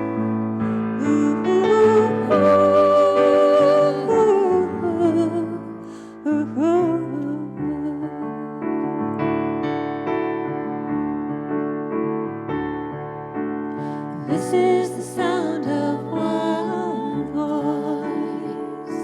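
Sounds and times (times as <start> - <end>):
person singing wavering notes: 1.0 - 8.1.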